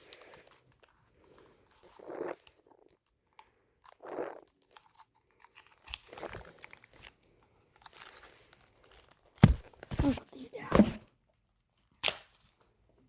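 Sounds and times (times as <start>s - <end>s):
duct tape ripping: 12.0s - 12.5s.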